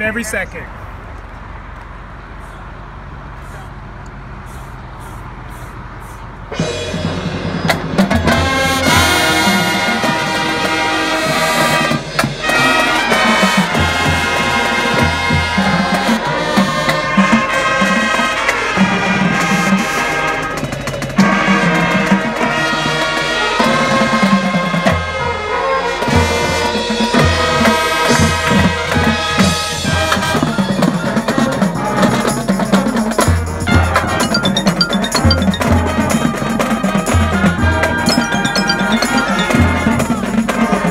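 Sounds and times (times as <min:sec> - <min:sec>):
drumline and bass drum hits: 0:33.6 - 0:36.6
mallet percussion: 0:33.8 - 0:36.7, 0:38.0 - 0:40.6.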